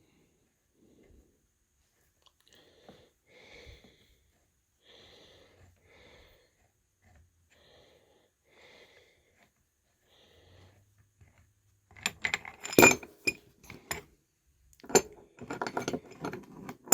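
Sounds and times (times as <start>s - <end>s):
hissy breathing: 2.5s - 6.6s.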